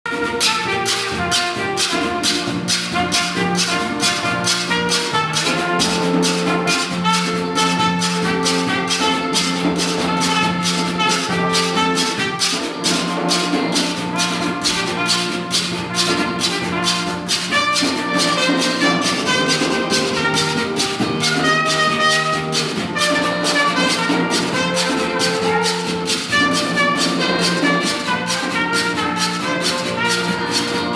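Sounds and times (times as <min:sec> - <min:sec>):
drum: 0:00.1 - 0:30.9
hand saw scraped rhythmically: 0:00.3 - 0:30.9.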